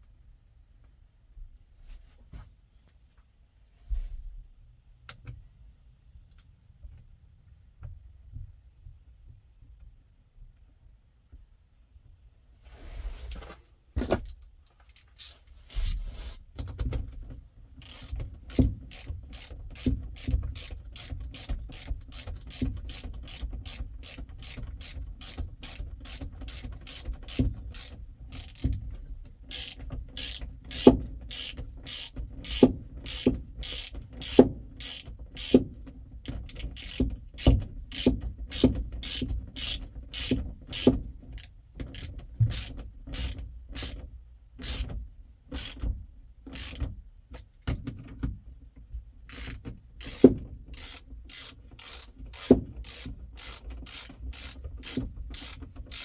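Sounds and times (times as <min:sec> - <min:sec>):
ratchet wrench clicking: 0:15.0 - 0:16.0, 0:17.8 - 0:35.6, 0:36.3 - 0:44.0, 0:44.6 - 0:44.9, 0:45.5 - 0:45.8, 0:46.5 - 0:46.9, 0:49.3 - 0:56.0.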